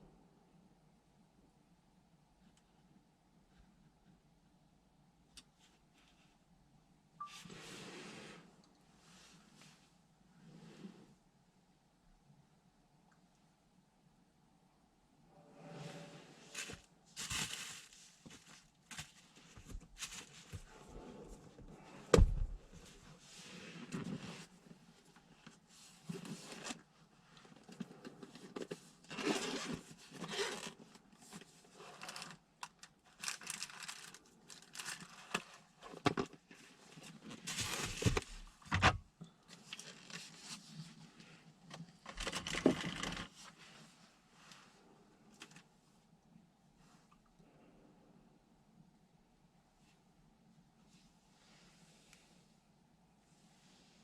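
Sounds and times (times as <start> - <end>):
rustling and scraping: 7.3 - 11.2, 15.3 - 32.4, 33.2 - 38.7, 39.4 - 45.8.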